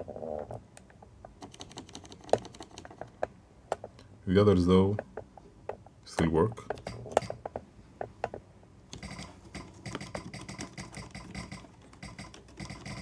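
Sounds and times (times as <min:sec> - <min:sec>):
mechanical keyboard keystrokes: 0:01.4 - 0:03.1, 0:08.9 - 0:13.0.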